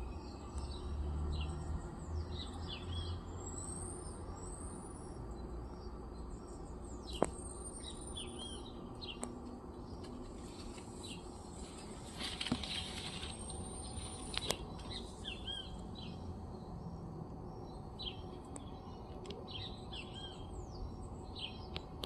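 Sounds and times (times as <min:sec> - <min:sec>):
small birds chirping: 0:00.0 - 0:22.0
rustle: 0:10.0 - 0:15.4.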